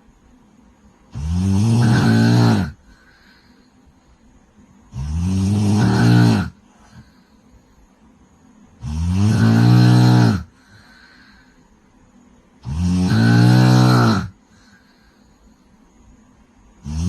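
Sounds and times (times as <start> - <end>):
quiet breathing: 0.0 - 17.0
woman snoring: 1.1 - 3.7, 4.9 - 7.4, 8.8 - 11.7, 12.6 - 15.5, 16.8 - 17.0.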